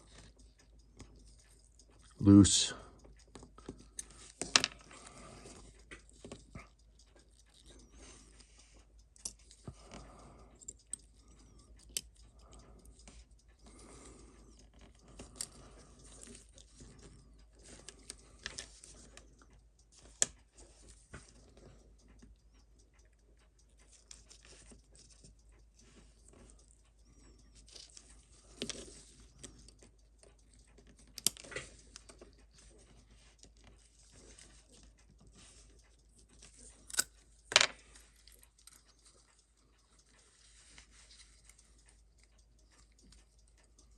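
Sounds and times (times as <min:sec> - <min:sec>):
tools clicking on watch parts: 0:00.0 - 0:43.9.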